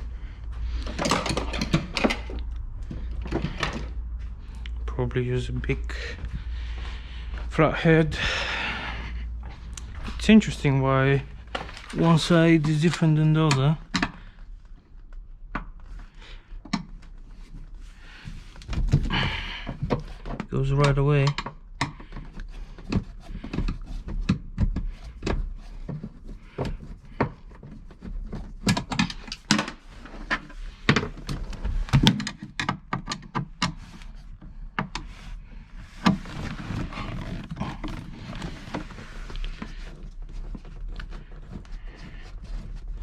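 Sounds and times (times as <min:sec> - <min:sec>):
tools and metal fittings clattering: 0:00.8 - 0:02.4
rustling: 0:33.8 - 0:43.0.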